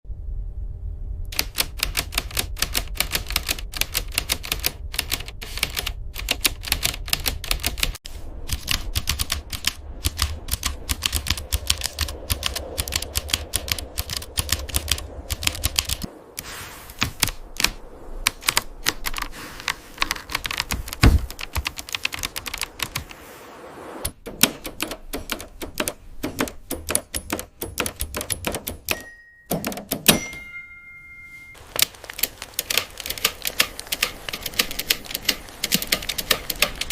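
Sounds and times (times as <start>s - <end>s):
typewriter keys clacking: 1.4s - 16.1s, 20.0s - 23.0s, 24.3s - 30.4s, 31.8s - 36.9s
heavy typewriter thump: 20.9s - 21.5s.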